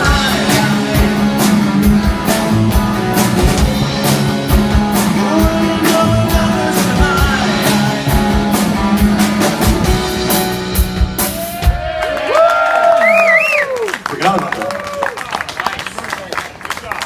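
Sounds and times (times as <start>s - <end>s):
live rock band playing: 0.0s - 13.7s
crowd whooping and shouting: 11.2s - 14.0s.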